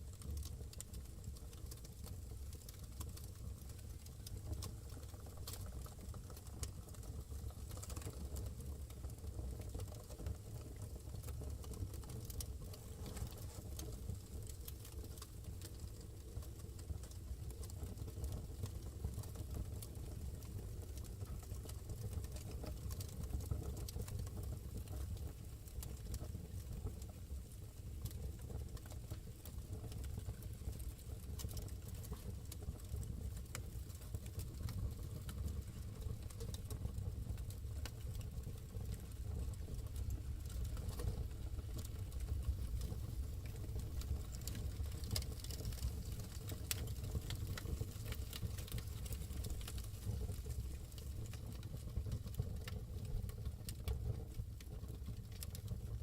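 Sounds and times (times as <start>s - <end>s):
fire crackling and popping: 0.0s - 56.0s
fire rumbling: 20.9s - 56.0s.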